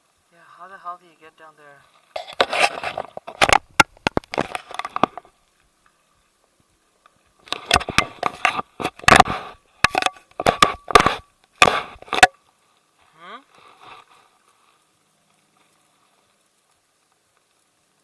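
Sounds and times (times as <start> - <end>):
sharp rock clicks: 2.4 - 5.3.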